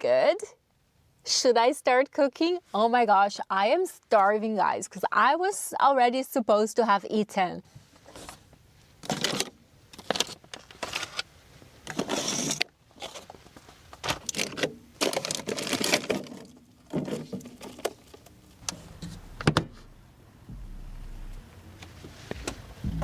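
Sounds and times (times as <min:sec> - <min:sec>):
rustling of handled objects: 0:07.8 - 0:19.9
objects clattering and knocking: 0:14.0 - 0:18.2
sharp knock: 0:19.0 - 0:21.5.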